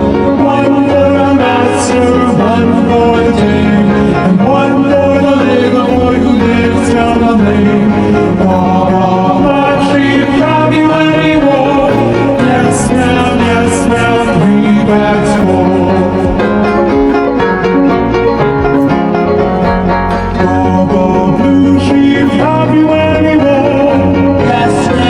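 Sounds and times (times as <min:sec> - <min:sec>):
upbeat children's song music: 0:00.0 - 0:17.6.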